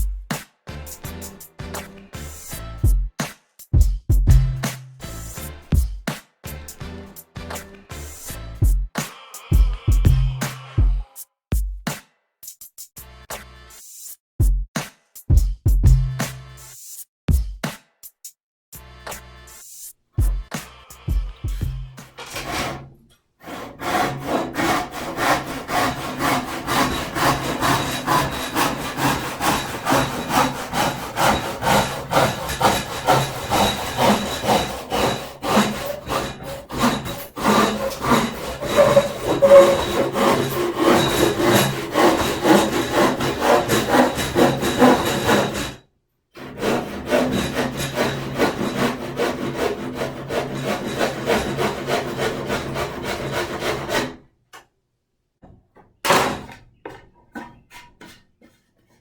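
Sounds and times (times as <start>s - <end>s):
hand saw cutting wood: 22.0s - 45.8s, 46.4s - 54.2s, 56.1s - 59.0s.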